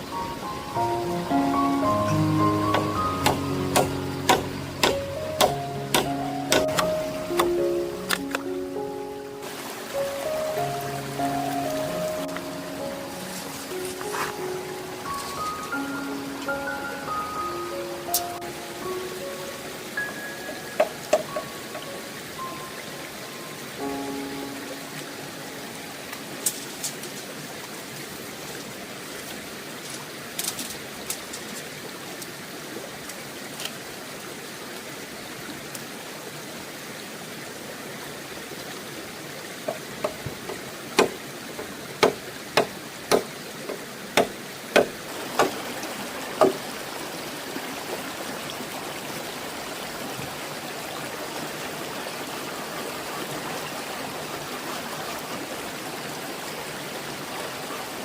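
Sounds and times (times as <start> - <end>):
running water: 0.0 - 58.0
sharp knocks: 2.7 - 8.4, 39.7 - 45.6.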